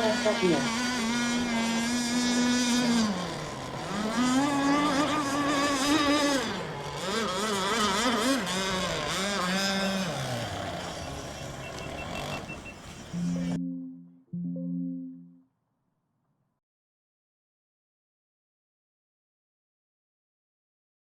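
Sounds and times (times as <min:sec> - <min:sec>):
model boat engine revving: 0:00.0 - 0:13.6.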